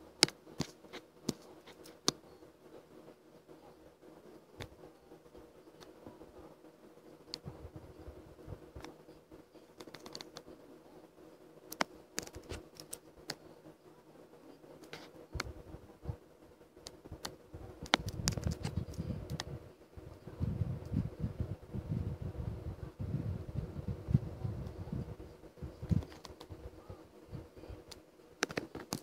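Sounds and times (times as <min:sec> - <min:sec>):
faint steady hum: 0:00.0 - 0:29.0
light clicks and taps drawing: 0:00.2 - 0:02.2, 0:08.7 - 0:10.6, 0:11.6 - 0:13.5, 0:16.8 - 0:19.5, 0:25.8 - 0:27.0.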